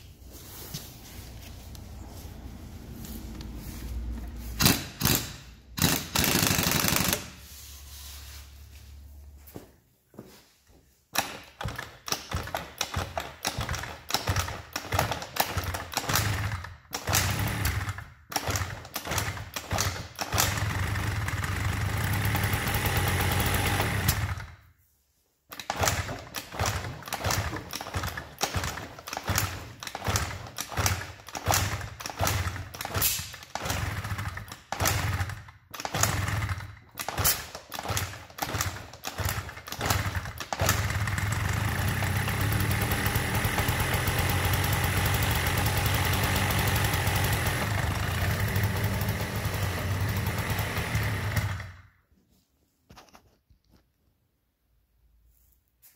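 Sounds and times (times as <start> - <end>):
scooter engine sputtering and revving: 13.5 - 24.5, 33.6 - 36.8, 37.9 - 51.8.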